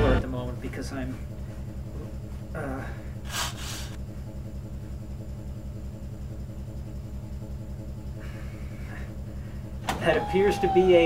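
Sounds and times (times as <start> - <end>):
machine low pulsing: 0.0 - 11.0
short hiss: 3.3 - 4.0.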